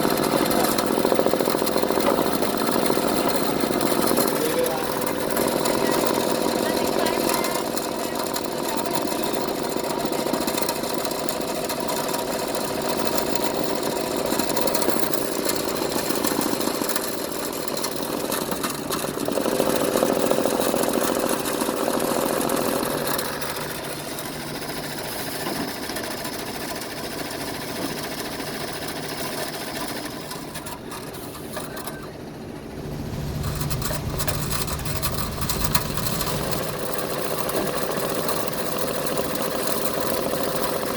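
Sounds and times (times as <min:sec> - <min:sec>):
machine grinding: 0:32.6 - 0:38.3.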